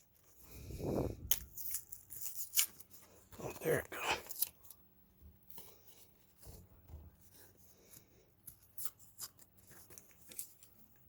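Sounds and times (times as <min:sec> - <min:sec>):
hands crinkling plastic packaging: 0:08.4 - 0:11.0.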